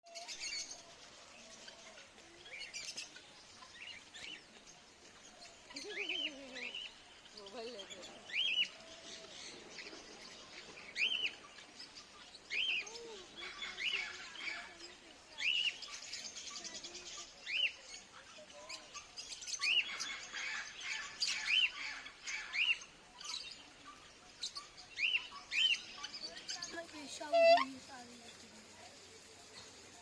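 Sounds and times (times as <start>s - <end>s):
swan calling: 27.1s - 27.8s.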